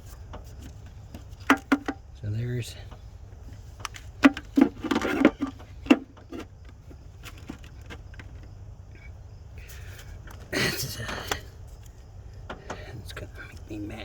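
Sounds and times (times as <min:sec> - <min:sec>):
hand tools clicking and knocking: 0:00.3 - 0:02.0, 0:03.8 - 0:08.5.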